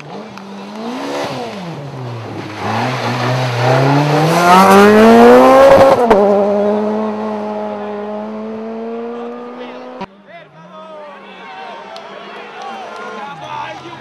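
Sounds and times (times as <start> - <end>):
rally car engine accelerating: 0.0 - 10.1.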